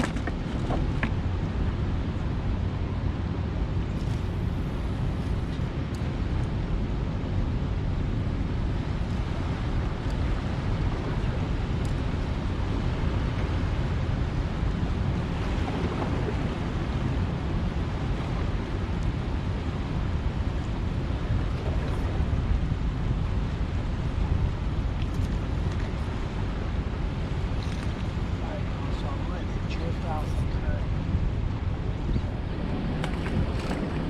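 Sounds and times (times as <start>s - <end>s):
rough water: 0.0s - 34.0s
wind buffeting microphone: 0.0s - 34.0s.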